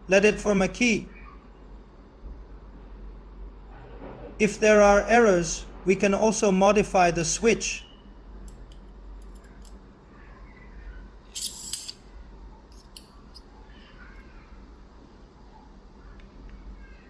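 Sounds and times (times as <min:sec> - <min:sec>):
metal pieces clicking: 0:11.3 - 0:12.0, 0:12.7 - 0:13.5.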